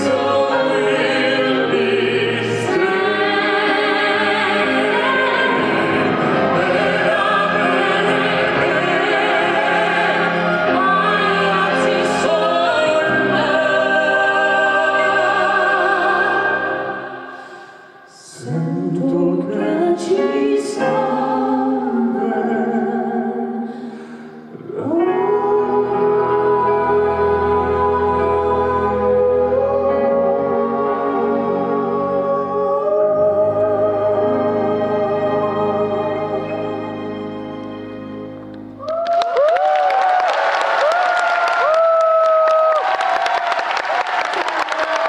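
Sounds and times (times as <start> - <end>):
man and woman singing opera: 0.0 - 37.0
instrumental accompaniment: 24.2 - 38.8.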